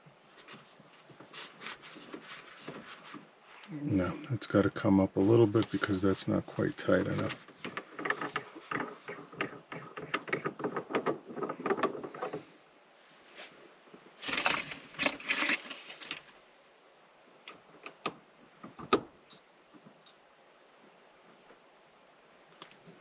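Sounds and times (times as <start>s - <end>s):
small clicks and rattles: 7.0s - 12.4s, 14.2s - 16.3s.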